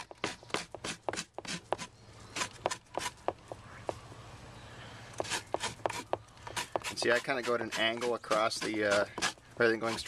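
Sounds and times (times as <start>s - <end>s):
scraper scraping a screen: 5.2s - 10.0s.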